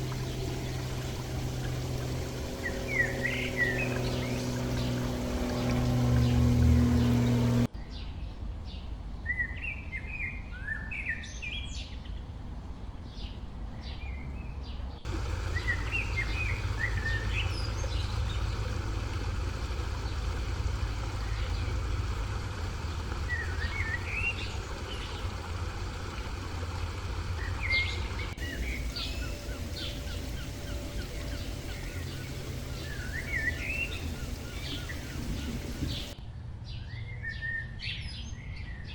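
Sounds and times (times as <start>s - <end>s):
low rumble: 0.0s - 7.7s, 15.1s - 36.2s
motor-like hum: 0.0s - 7.7s, 15.0s - 36.2s
songbirds chirping: 0.0s - 12.3s, 13.0s - 38.9s.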